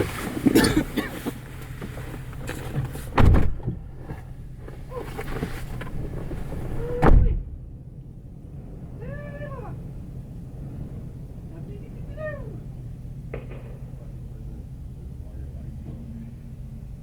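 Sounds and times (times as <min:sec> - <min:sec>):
rifle shots: 0:13.3 - 0:14.1.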